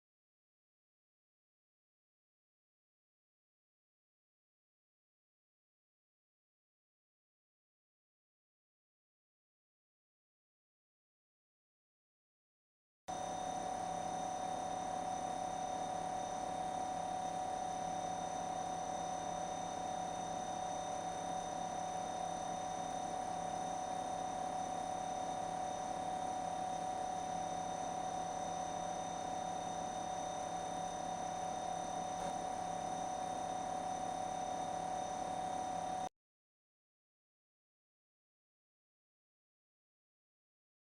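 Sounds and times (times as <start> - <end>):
refrigerator compressor humming: 13.1 - 36.1.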